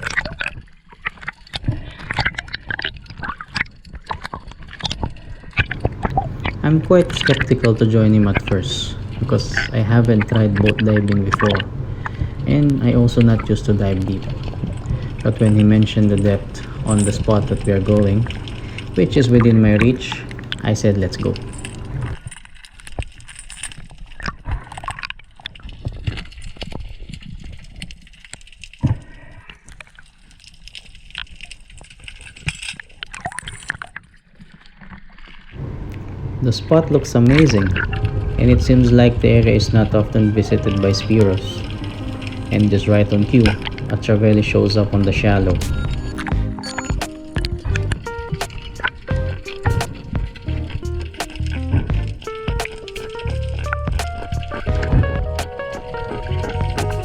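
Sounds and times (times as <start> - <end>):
water sloshing and gurgling: 0.0 - 57.0
low rumble: 5.7 - 22.2, 35.6 - 52.6, 53.2 - 57.0.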